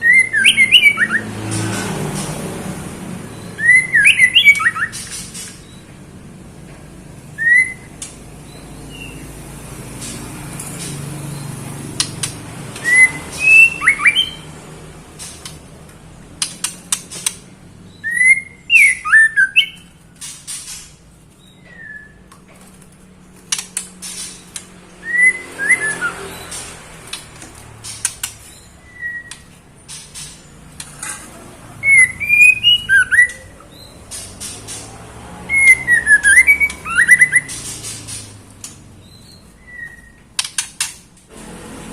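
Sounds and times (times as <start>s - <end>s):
bird whistling sliding notes: 3.3s - 5.8s, 12.8s - 14.5s, 18.0s - 19.9s, 24.0s - 26.8s, 27.8s - 30.5s, 31.8s - 34.9s, 35.5s - 38.3s.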